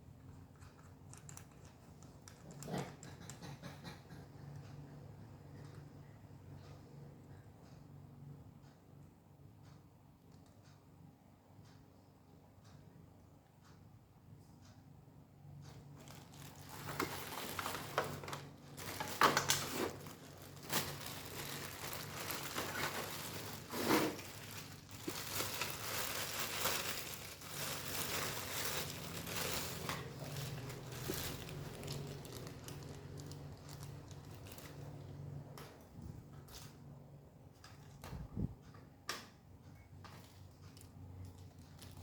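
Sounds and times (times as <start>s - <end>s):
packaging crinkling: 16.0s - 35.0s.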